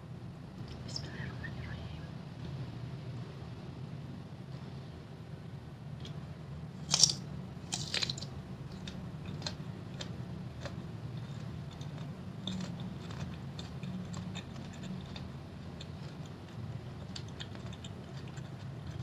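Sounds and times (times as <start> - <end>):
chewing crunchy fruit: 6.0 - 19.0.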